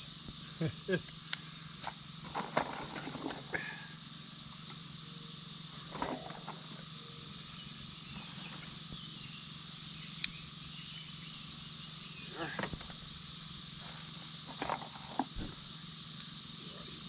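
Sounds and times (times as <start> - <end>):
frogs and insects chorus: 0.0 - 17.0
firewood knocks and rustles: 13.8 - 15.6.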